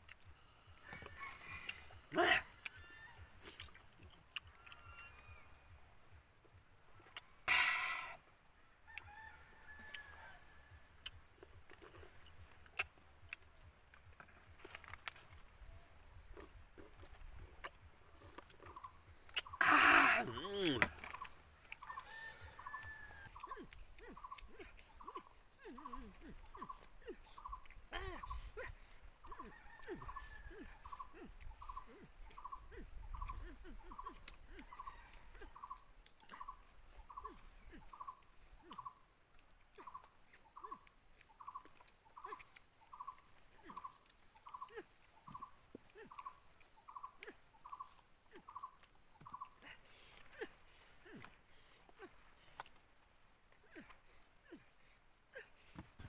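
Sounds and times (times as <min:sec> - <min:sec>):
insects droning: 0:00.3 - 0:02.8, 0:18.5 - 0:51.4.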